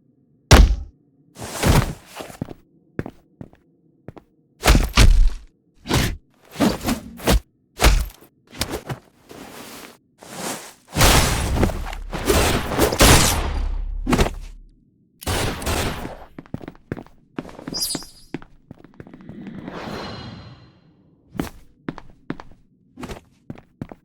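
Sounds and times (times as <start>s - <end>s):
sharp fight hits and thuds: 0.5s - 0.9s, 4.6s - 9.0s, 11.0s - 14.6s.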